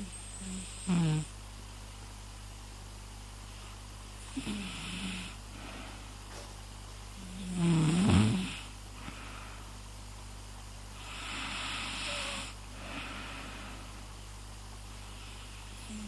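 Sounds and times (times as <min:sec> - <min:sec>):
person fake snoring: 0:00.0 - 0:01.3, 0:04.3 - 0:05.4, 0:07.2 - 0:08.7, 0:11.0 - 0:13.2, 0:15.8 - 0:16.0
breathy exhale: 0:11.1 - 0:14.1.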